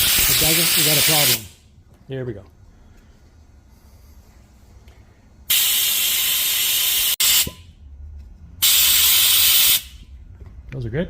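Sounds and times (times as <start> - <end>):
vacuum tester hissing loudly: 0.0 - 1.5
brief air puff: 5.5 - 7.7, 8.6 - 10.0.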